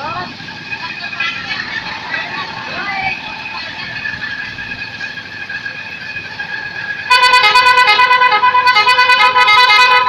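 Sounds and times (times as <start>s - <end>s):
multi-tone air horn melody: 7.0s - 10.0s.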